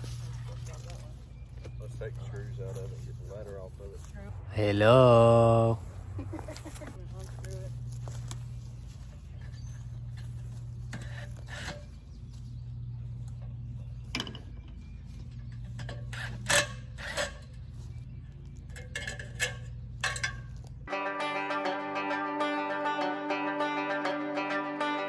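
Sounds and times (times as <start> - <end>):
steady low hum: 0.0 - 20.8
metal parts and tools clicking: 18.7 - 20.6
plucked string music: 20.9 - 25.0.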